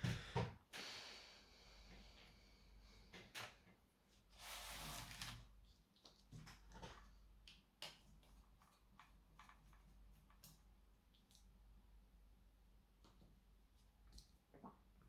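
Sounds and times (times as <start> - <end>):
light clicks and taps of small parts: 6.0 - 11.6.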